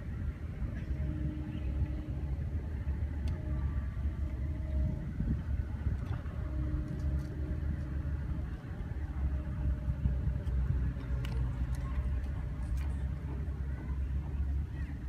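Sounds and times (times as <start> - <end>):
boat engine rumbling: 0.0 - 15.0
faint steady hum: 0.0 - 15.0.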